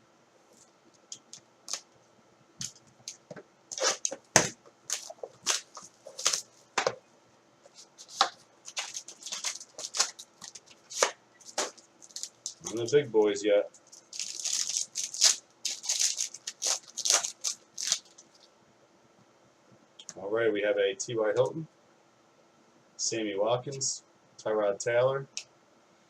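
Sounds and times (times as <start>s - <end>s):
card packaging rustling and tearing: 2.6s - 6.5s, 7.7s - 12.9s, 13.8s - 18.4s.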